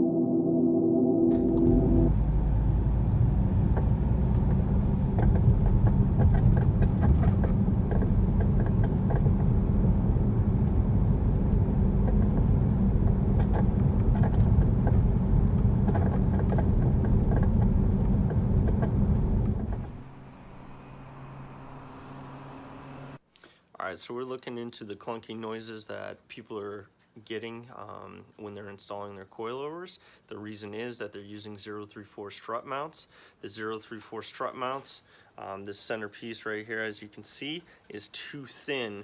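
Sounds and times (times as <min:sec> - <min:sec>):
faint low hum: 0:00.0 - 0:23.2
car road and engine rumble: 0:01.3 - 0:23.2.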